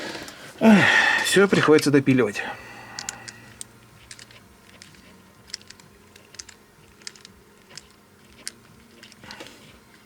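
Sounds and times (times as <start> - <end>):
small parts clicking and tapping: 1.6 - 2.1, 2.9 - 10.0.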